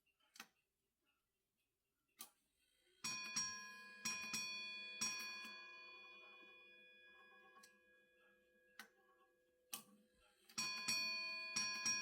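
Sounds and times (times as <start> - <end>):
clock bell ringing: 3.0 - 8.8, 10.6 - 12.0.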